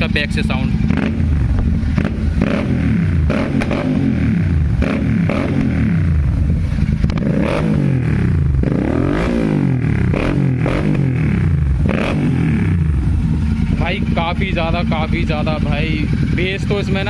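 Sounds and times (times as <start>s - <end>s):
motorcycle engine revving: 0.0s - 17.0s
exhaust crackles and pops: 7.0s - 7.3s.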